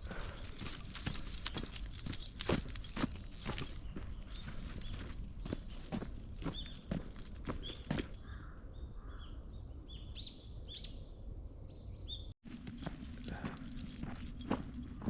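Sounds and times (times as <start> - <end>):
small birds chirping: 0.1 - 8.5.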